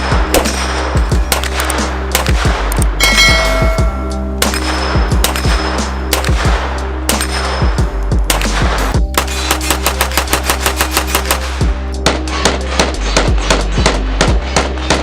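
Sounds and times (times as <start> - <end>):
background music with bass: 0.0 - 15.0
submachine gun firing: 8.3 - 14.3.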